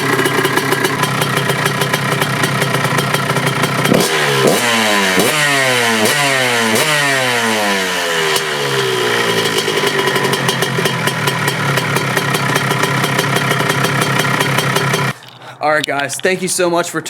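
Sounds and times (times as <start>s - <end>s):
dirt bike engine revving: 0.0s - 15.2s.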